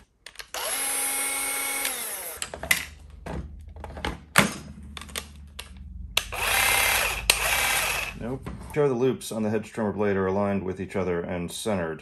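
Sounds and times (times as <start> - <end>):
tool parts clicking and knocking: 0.0 - 0.8, 1.6 - 8.1
grass shear motor whirring: 0.6 - 2.5, 6.2 - 8.2.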